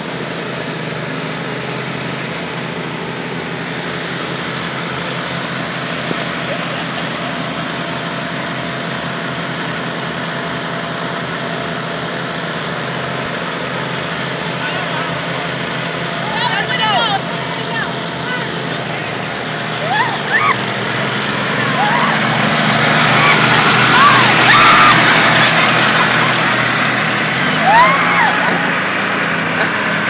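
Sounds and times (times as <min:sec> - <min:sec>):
riding lawn mower engine: 0:00.0 - 0:30.0.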